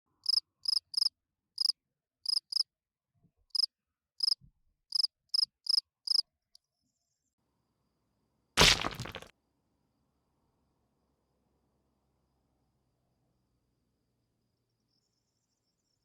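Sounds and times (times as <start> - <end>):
cricket chirping: 0.2 - 1.7, 3.6 - 6.2.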